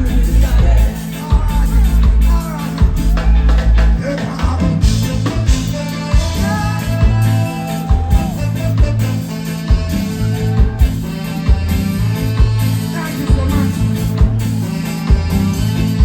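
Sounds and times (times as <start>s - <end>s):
person singing: 0.0s - 11.6s
live reggae band playing: 0.0s - 16.0s.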